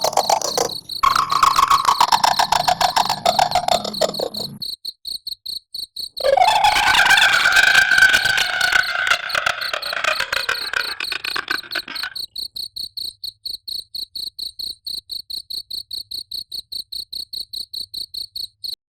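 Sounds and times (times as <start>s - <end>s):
cricket chirping: 0.0s - 18.8s
wailing ghost cry: 1.0s - 4.4s, 6.2s - 12.1s.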